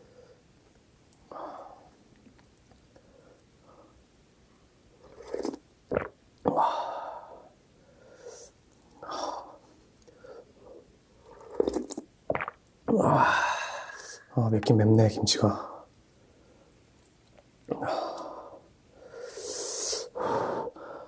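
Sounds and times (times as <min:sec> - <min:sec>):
slurping noodles: 0:05.1 - 0:05.6, 0:11.3 - 0:12.0
breaths: 0:06.6 - 0:10.9, 0:13.1 - 0:14.3, 0:17.8 - 0:21.0.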